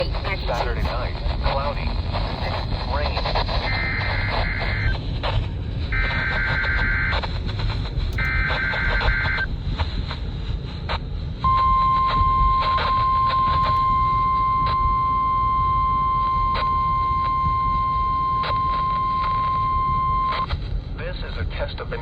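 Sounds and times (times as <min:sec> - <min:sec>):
radio hiss with faint crackles: 0:00.0 - 0:22.0
steady warning alarm tone: 0:08.2 - 0:09.5, 0:11.5 - 0:20.4.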